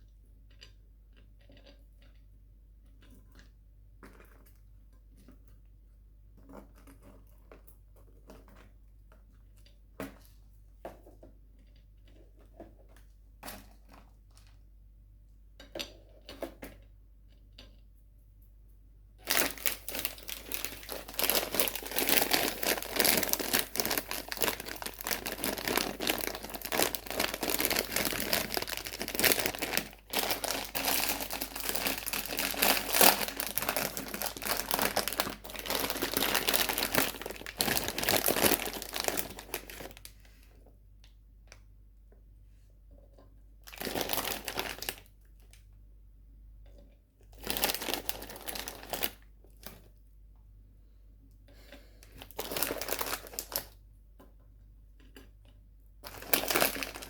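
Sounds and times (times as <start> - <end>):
sweet wrappers crinkling: 19.2 - 40.5, 43.7 - 45.5, 47.4 - 49.8, 52.2 - 53.8, 56.0 - 57.0.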